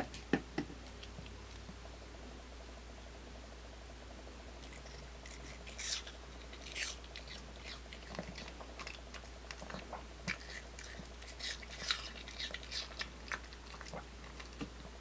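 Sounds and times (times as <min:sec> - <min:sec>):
dog crunching apple: 0:04.6 - 0:14.9.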